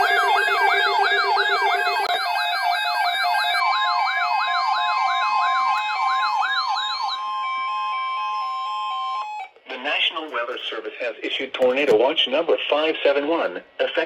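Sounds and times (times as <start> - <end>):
steady held tone: 0.0 - 3.6
electronic beeps: 0.0 - 7.3
electronic siren sweep: 0.0 - 9.5.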